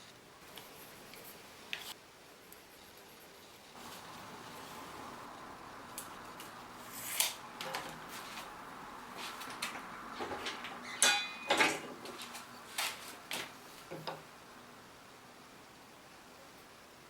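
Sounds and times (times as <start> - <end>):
short metallic ring: 10.8 - 11.6.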